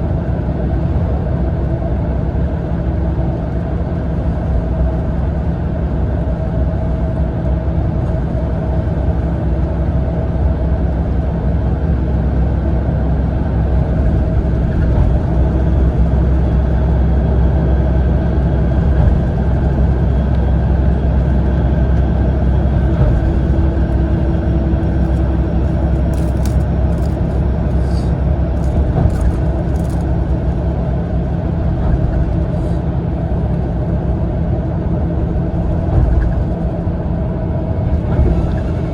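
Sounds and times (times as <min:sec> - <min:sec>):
bus engine and road rumble: 0:00.0 - 0:38.9
light clicks and rattles: 0:25.0 - 0:30.6.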